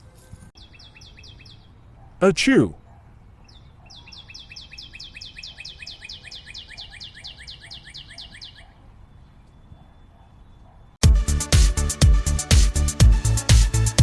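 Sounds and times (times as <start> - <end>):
bird-like chirping trill: 0.6 - 2.1, 2.7 - 11.0.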